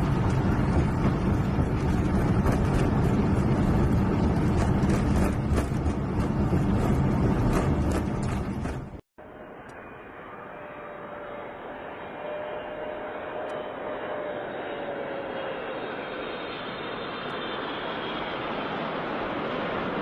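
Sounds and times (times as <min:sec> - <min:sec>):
wheels on runway: 0:00.0 - 0:09.0.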